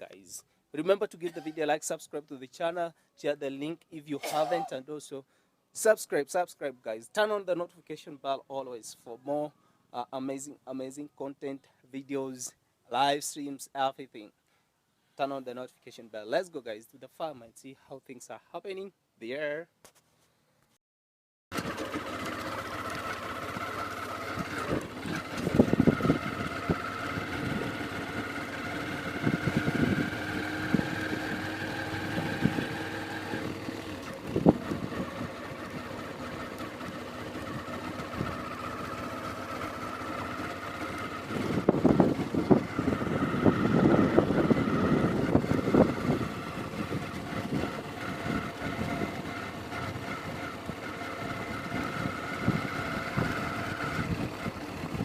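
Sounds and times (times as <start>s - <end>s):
motorbike engine running: 21.5s - 55.0s.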